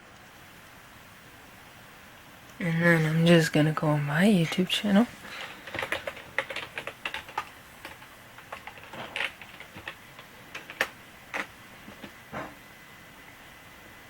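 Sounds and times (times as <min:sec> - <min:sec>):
computer keyboard typing: 0:05.3 - 0:11.5.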